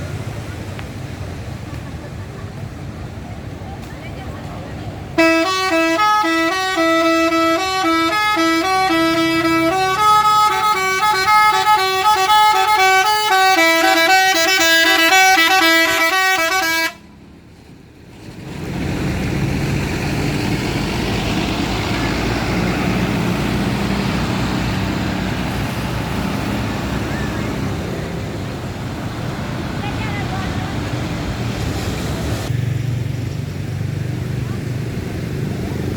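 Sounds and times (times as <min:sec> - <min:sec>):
noisy outdoor din: 0:00.0 - 0:35.9
multi-tone bus horn melody: 0:05.2 - 0:17.1.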